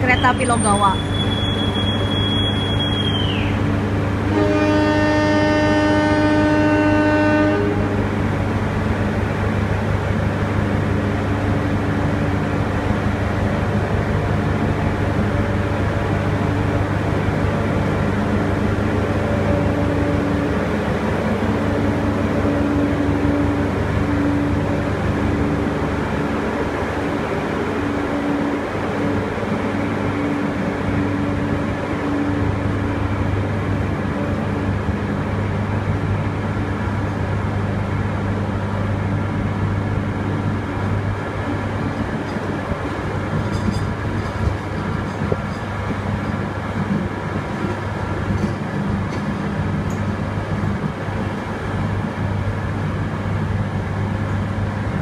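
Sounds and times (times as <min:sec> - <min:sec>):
low rumble of train: 0:00.0 - 0:55.0
train horn blast: 0:04.2 - 0:08.0.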